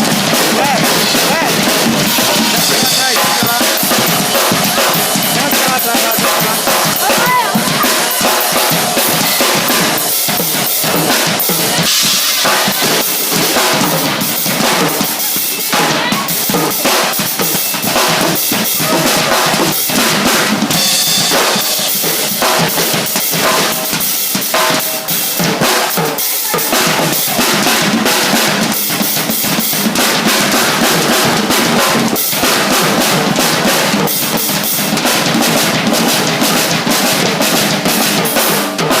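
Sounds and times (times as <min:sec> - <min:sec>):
fast drum beat: 0:00.0 - 0:39.0.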